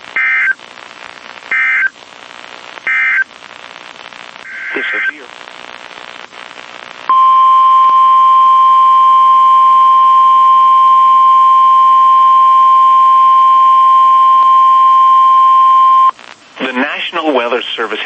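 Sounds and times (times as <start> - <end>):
steady single-pitch warning tone: 7.1 - 16.1.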